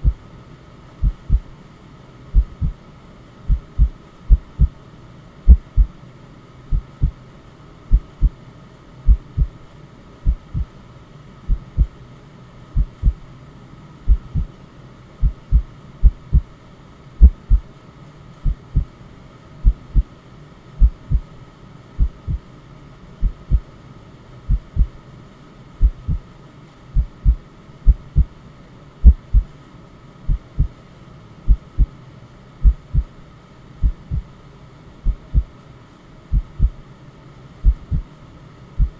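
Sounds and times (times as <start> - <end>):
faint white noise hiss: 0.0 - 38.9
heartbeat double thump: 1.0 - 1.4, 2.4 - 2.8, 3.5 - 4.7, 5.5 - 5.9, 10.3 - 10.7, 12.8 - 13.2, 14.1 - 14.5, 17.2 - 17.6, 20.8 - 21.3, 24.5 - 24.9, 25.8 - 26.2, 29.0 - 29.5, 30.3 - 30.7, 31.5 - 31.9, 32.6 - 33.1, 33.8 - 34.3, 35.1 - 35.5, 36.4 - 36.8, 37.6 - 38.0.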